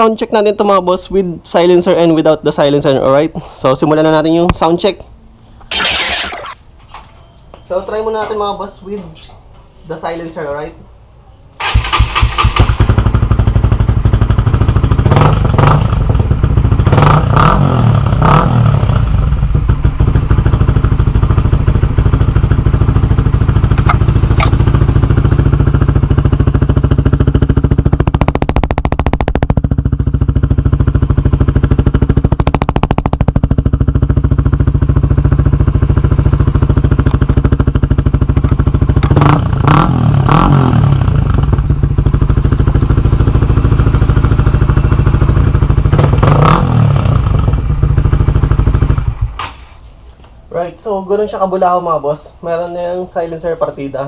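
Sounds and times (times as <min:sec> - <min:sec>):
motorcycle engine idling and revving: 0:11.6 - 0:49.8.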